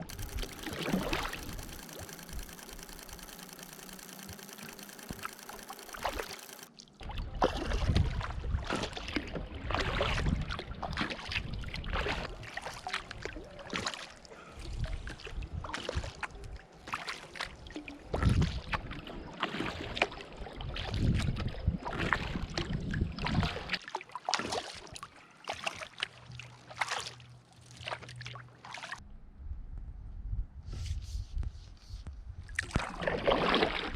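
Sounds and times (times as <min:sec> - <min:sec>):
steady humming: 0:00.0 - 0:06.7.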